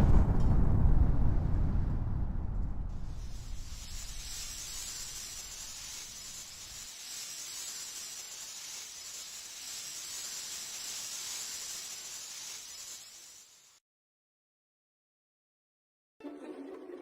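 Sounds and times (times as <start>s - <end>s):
low rumble: 0.0s - 5.2s
steady high hissing: 2.9s - 13.8s.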